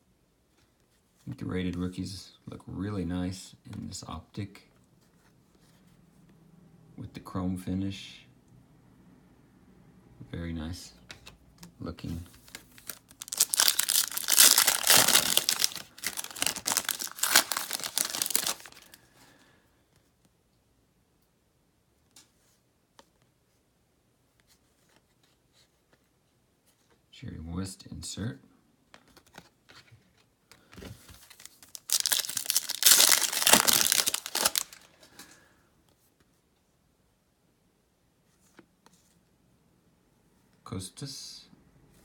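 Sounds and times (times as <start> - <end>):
plastic wrapper crinkling and tearing: 12.4 - 19.0, 31.1 - 34.9.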